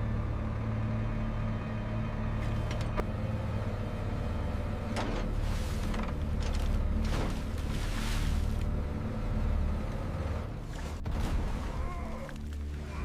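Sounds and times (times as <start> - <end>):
heavy machinery rumble: 0.0 - 13.0.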